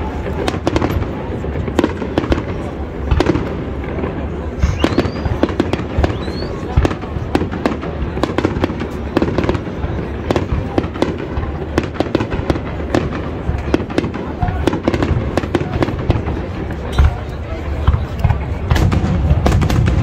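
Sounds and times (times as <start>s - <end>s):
fireworks bangs and crackling: 0.0s - 20.0s
rising firework whistles: 4.6s - 6.8s.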